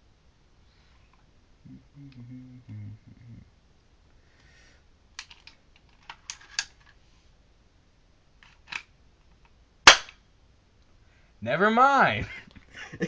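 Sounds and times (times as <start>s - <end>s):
airsoft pistol clicks: 9.9s - 10.2s.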